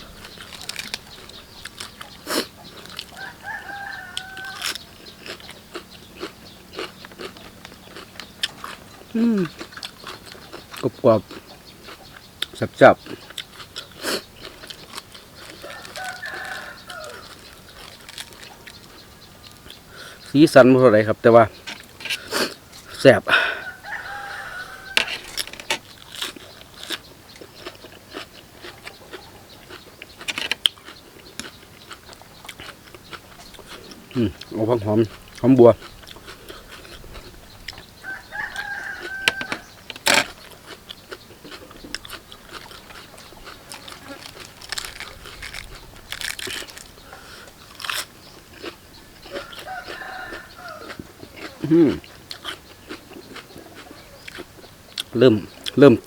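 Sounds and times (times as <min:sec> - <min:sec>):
chewing crisp raw vegetables: 0:00.0 - 0:56.0.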